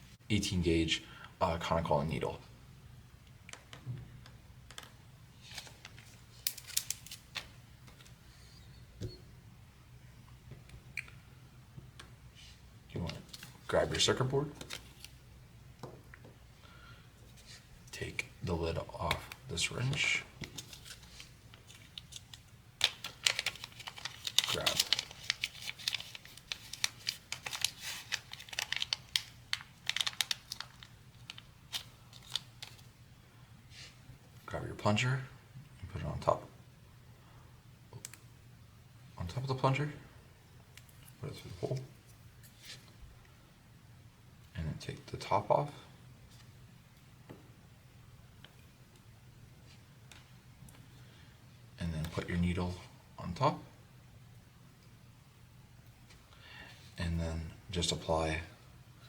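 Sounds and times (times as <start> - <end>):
low steady hum: 0.0 - 59.0
plastic packaging crinkling: 5.4 - 7.5, 20.4 - 32.9.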